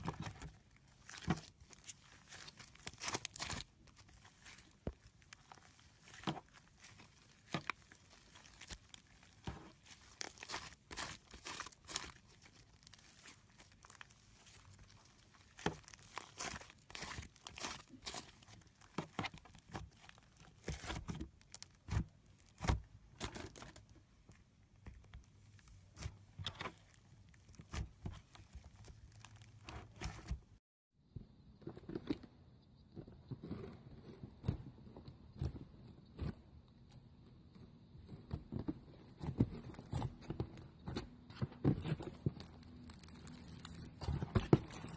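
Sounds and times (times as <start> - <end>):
slime crackling and popping: 0.0 - 22.8, 42.4 - 44.0.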